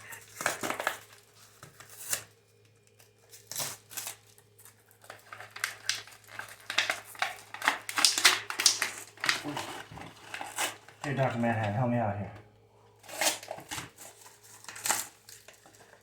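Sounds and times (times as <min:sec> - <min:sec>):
plastic packaging crinkling: 0:00.0 - 0:12.0, 0:13.0 - 0:16.0.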